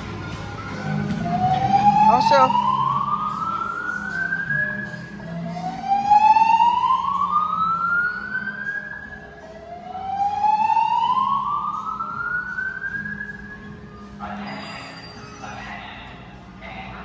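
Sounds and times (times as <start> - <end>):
rising whoop alarm tone: 0.8 - 14.0.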